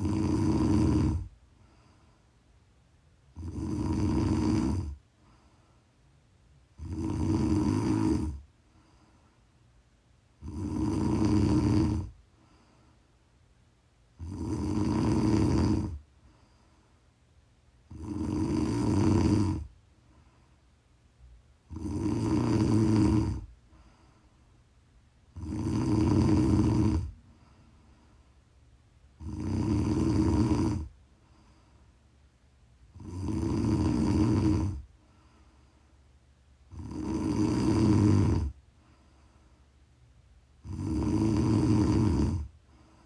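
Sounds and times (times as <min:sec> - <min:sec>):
woman snoring: 0:00.0 - 0:01.4, 0:03.3 - 0:05.0, 0:06.8 - 0:08.5, 0:10.4 - 0:12.2, 0:14.2 - 0:16.0, 0:17.8 - 0:19.7, 0:21.6 - 0:23.5, 0:25.3 - 0:27.2, 0:29.2 - 0:30.9, 0:32.9 - 0:34.9, 0:36.7 - 0:38.6, 0:40.6 - 0:42.5.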